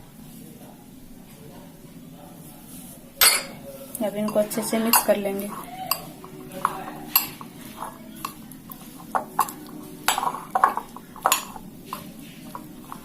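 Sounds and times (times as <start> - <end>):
spoon scraping a bowl: 4.2 - 13.0.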